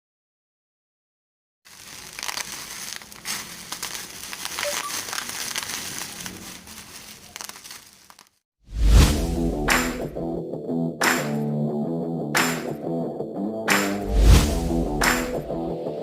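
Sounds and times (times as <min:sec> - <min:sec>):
packaging crinkling: 0:01.7 - 0:08.4
music: 0:08.9 - 0:16.0.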